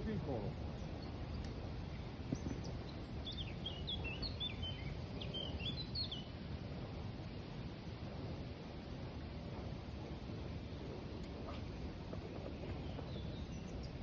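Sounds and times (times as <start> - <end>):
bird chirping: 0.0 - 6.3, 12.4 - 14.0
low outdoor background noise: 0.0 - 14.0.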